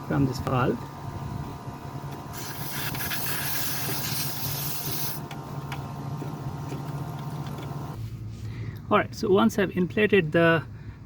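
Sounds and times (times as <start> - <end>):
steady low hum: 0.0 - 8.9
air hissing from tyre valve: 2.3 - 5.2.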